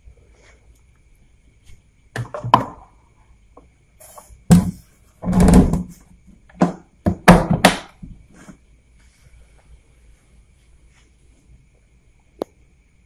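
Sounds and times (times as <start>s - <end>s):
scrape: 0.2s - 0.7s, 4.0s - 5.1s, 8.3s - 11.5s
knocks and thuds: 4.5s - 8.2s.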